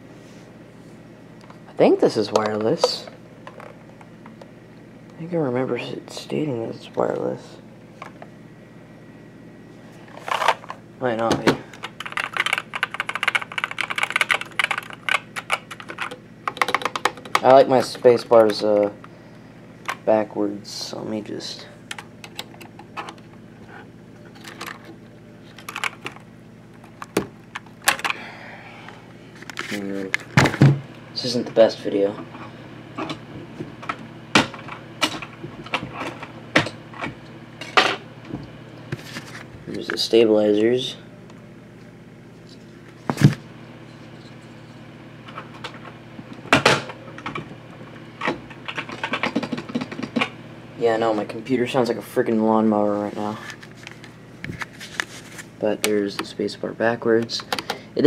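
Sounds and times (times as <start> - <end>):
low hum: 0.0 - 57.6.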